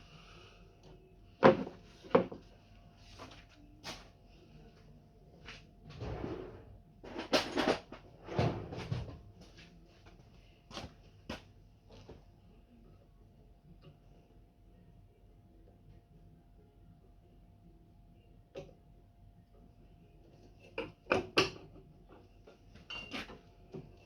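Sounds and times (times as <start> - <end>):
objects knocking and clattering: 5.9 - 9.3.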